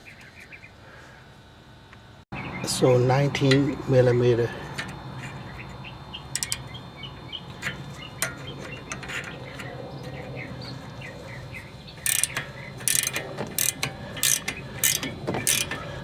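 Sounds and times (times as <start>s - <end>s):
ratchet wrench clicking: 6.3s - 6.7s, 12.0s - 15.9s.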